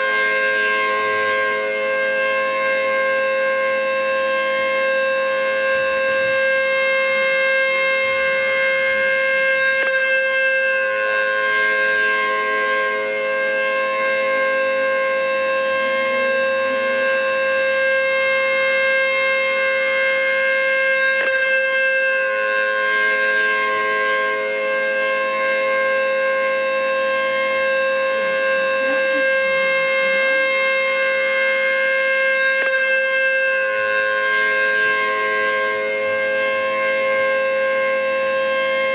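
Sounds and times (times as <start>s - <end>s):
tornado warning siren: 0.0s - 38.9s.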